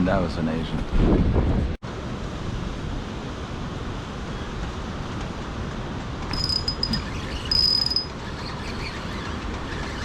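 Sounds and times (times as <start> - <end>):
wind: 0.0 - 10.0
high-pitched chirring whir: 6.3 - 10.0.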